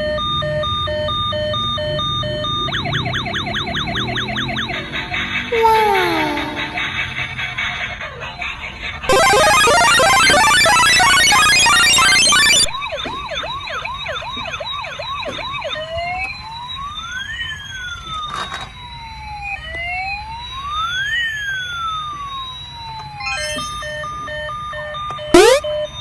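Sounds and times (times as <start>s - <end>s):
toy electronic siren: 0.0s - 7.0s, 9.1s - 26.0s
little electronic tune: 9.1s - 12.8s, 25.4s - 25.6s.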